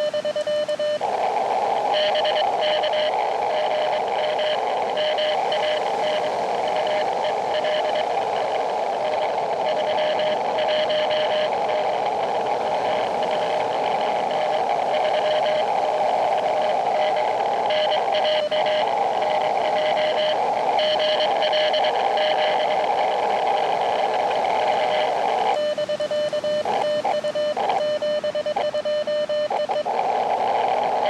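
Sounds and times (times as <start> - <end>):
radio band hiss: 0.0 - 31.0
morse code beeping tone: 12.7 - 31.0.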